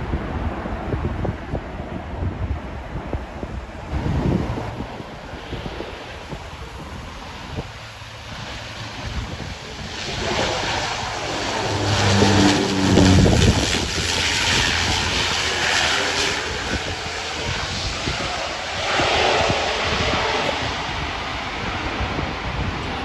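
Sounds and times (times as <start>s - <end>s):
wind buffeting microphone: 0.0s - 23.0s
engine noise: 3.9s - 23.0s
low hum: 7.9s - 18.5s.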